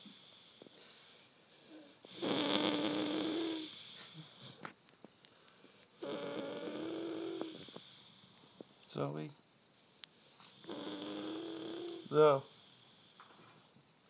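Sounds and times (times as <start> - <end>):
loud buzzing snores: 0.0 - 4.6, 6.0 - 8.6, 10.5 - 13.4
quiet breathing: 0.0 - 13.8.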